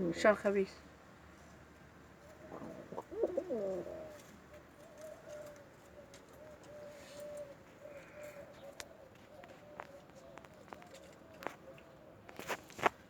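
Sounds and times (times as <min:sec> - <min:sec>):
pigeon cooing: 0:02.2 - 0:11.8.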